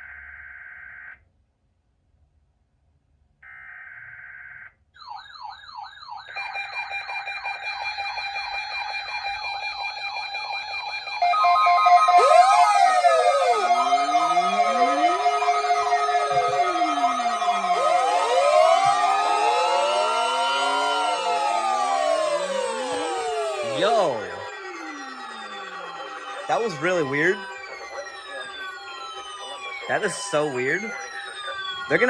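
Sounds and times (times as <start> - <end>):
garbled sliding alarm tone: 6.3 - 32.0
weather radio alert alarms: 6.3 - 32.0
warbling siren-like sweeps: 7.2 - 32.0
steady beeps: 10.9 - 32.0.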